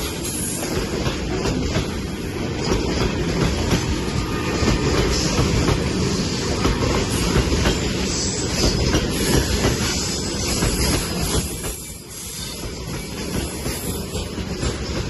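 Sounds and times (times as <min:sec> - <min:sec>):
freight train rumbling past: 0:00.0 - 0:15.0
hiss: 0:04.3 - 0:14.2.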